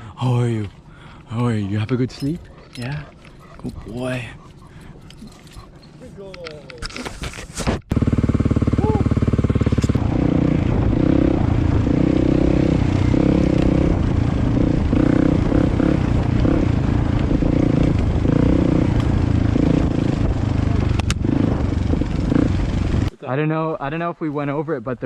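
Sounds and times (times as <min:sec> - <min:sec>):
dirt bike engine revving: 0:07.9 - 0:23.1.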